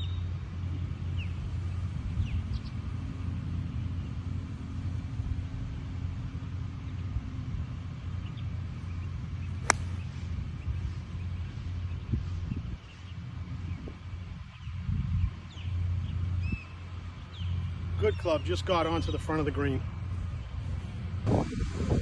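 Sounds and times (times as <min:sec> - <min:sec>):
golf club striking ball: 0:09.6 - 0:10.2
wind buffeting microphone: 0:09.8 - 0:13.0, 0:13.6 - 0:16.6, 0:20.2 - 0:22.0.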